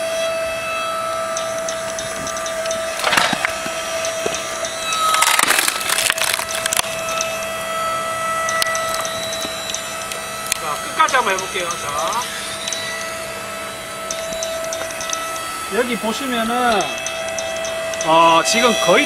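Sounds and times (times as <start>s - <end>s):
log splitter motor humming: 0.0s - 19.0s
wood cracking and splintering: 2.3s - 7.4s.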